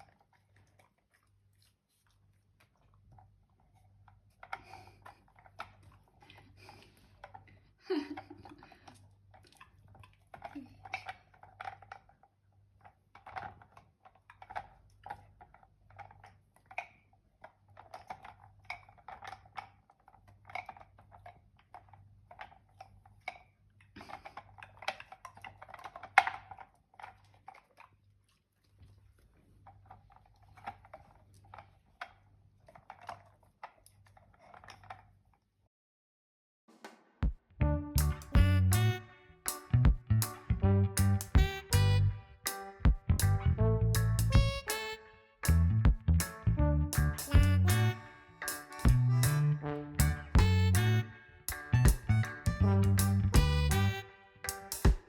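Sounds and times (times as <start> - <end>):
dog crunching food: 0.0 - 7.4, 8.4 - 35.3.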